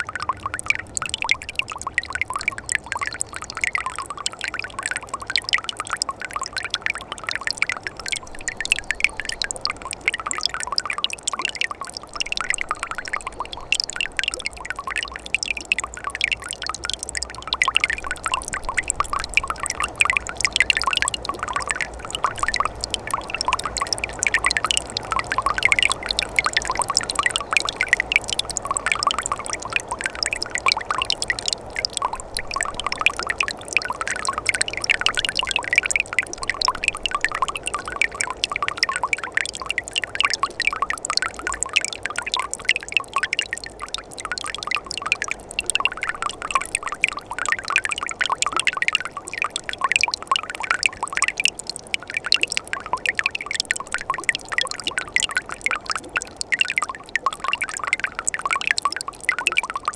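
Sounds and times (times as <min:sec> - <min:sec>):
stream water babbling and splashing: 0:00.0 - 0:59.9.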